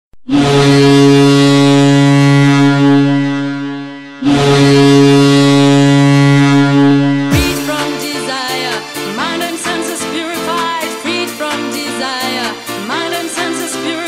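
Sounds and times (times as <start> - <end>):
goal horn blasts: 0.3 - 8.0.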